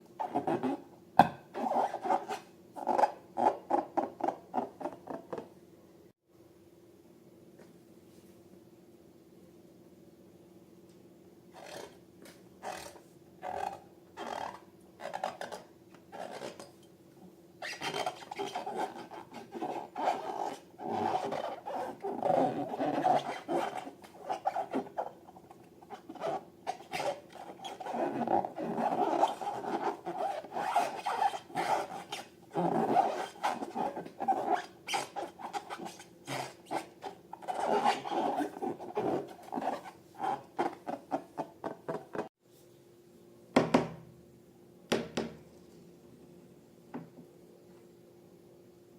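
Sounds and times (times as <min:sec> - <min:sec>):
hands rubbing balloons and slime: 0:25.8 - 0:42.3.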